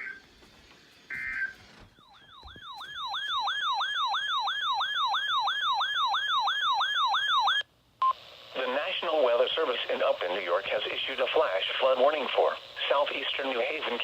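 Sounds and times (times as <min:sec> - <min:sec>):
electronic alert siren yelping: 0:01.1 - 0:07.6.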